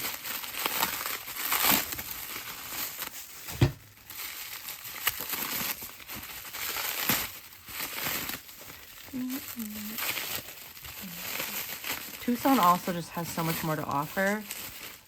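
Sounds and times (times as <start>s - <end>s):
packing wrap crinkling: 0.0s - 15.0s
sharp thump: 3.5s - 3.8s.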